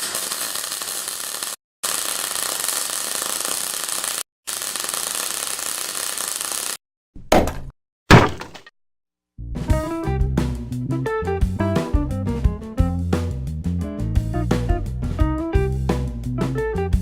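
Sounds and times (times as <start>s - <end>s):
loud thump: 7.3s - 8.7s.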